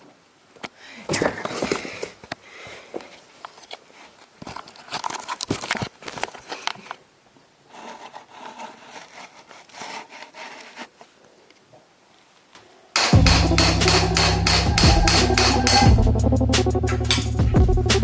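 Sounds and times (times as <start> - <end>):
rubbing and crinkling: 3.0 - 12.2
scraping: 7.7 - 11.1.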